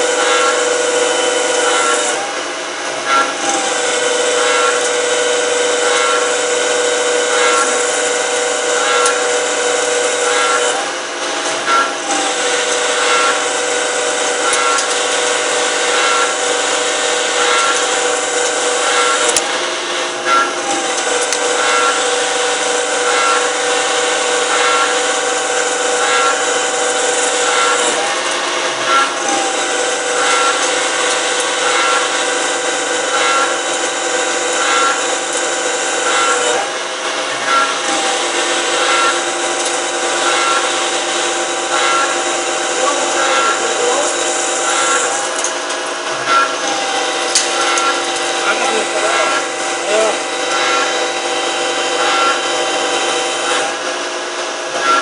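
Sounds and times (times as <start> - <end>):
lathe machining whine: 0.0 - 55.0.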